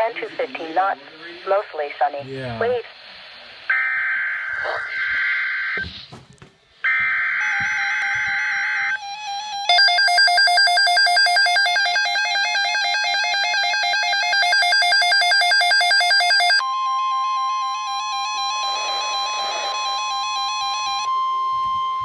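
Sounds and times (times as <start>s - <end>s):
pulsing electronic alarm beep: 6.9s - 22.0s
steady warning tone: 6.9s - 22.0s.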